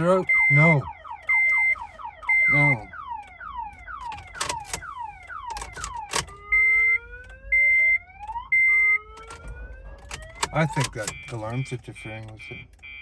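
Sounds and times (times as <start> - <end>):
car alarm siren: 0.0 - 13.0
steady high beep: 0.1 - 2.8.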